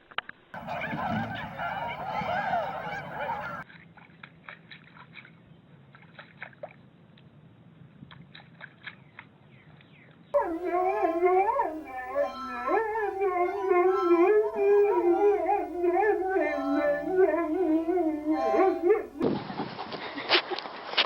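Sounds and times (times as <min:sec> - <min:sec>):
dog howling: 0:00.6 - 0:03.6, 0:10.4 - 0:19.2.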